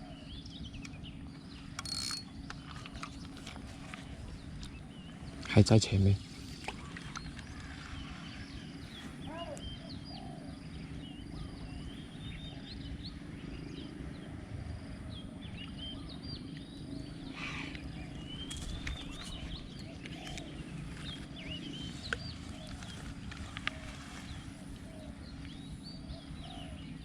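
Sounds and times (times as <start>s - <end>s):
small birds chirping: 0.0s - 27.0s
sharp clicks: 1.8s - 3.4s.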